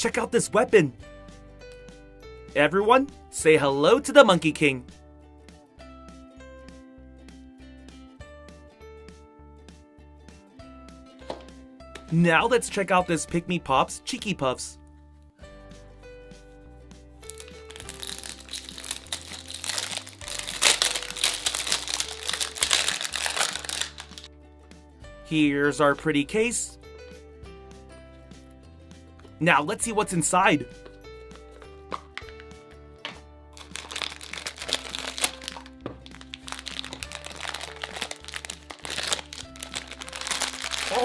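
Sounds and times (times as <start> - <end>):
soft background music: 0.0 - 41.0
plastic wrapping crinkling: 17.2 - 24.3, 33.6 - 41.0.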